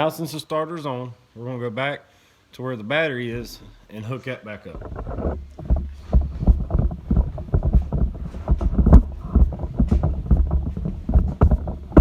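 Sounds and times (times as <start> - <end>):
microphone handling rumble: 3.3 - 3.9, 4.6 - 12.0
handling knocks and rubbing: 4.6 - 12.0.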